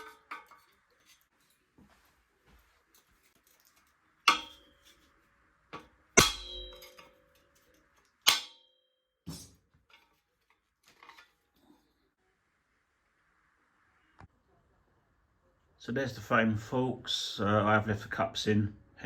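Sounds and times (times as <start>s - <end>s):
metal parts clanging: 0.0s - 1.6s, 3.0s - 5.1s, 5.8s - 8.6s, 9.3s - 11.4s.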